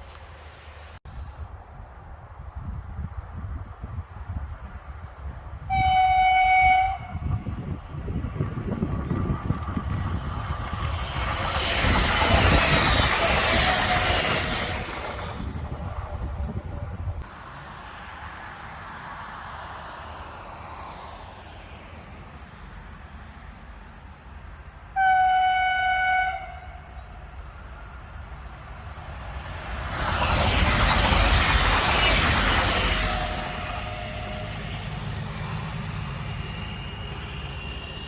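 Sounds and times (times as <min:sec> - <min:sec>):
train passing rumble: 0:00.0 - 0:38.0
low horn-like tone: 0:05.7 - 0:07.2, 0:25.0 - 0:26.8
train air horn blast: 0:05.7 - 0:07.4, 0:25.0 - 0:27.0, 0:33.0 - 0:34.7.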